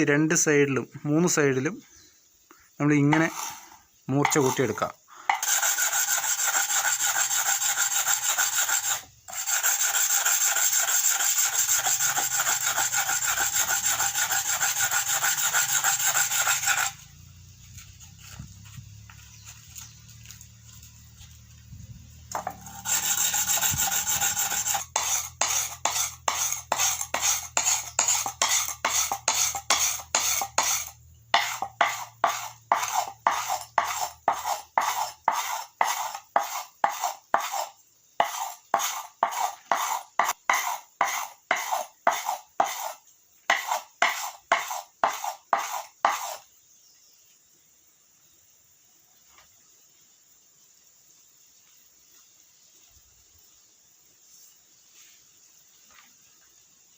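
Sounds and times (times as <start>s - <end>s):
knife blade being sharpened: 22.4s - 46.4s.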